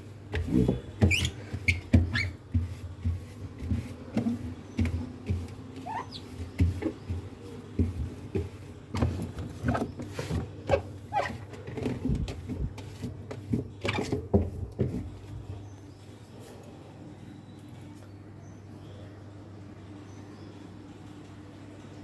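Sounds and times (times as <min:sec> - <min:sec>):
cloth squeaking on plastic: 0:00.4 - 0:02.4, 0:05.8 - 0:07.1, 0:09.6 - 0:12.8, 0:13.5 - 0:14.9.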